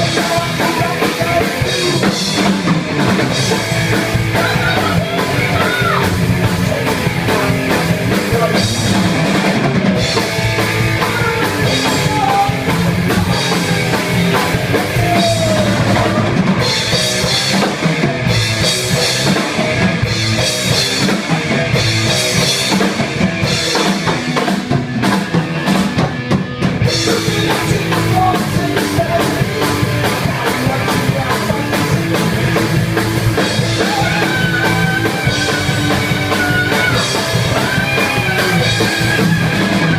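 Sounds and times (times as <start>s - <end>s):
rock music with drums: 0.0s - 39.9s.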